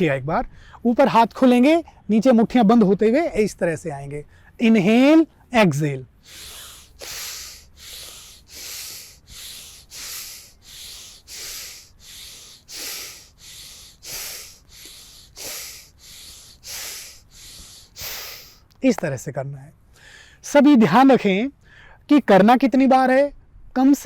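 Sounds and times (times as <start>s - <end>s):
forceful breathing through nose: 6.2s - 18.7s.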